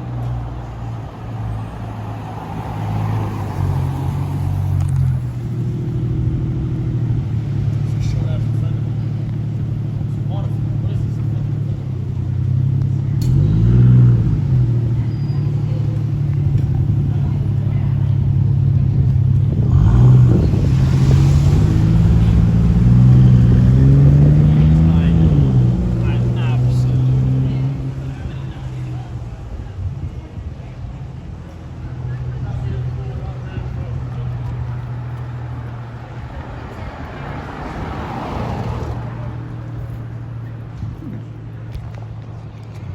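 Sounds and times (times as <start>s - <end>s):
car engine exhaust drone: 0.0s - 42.9s.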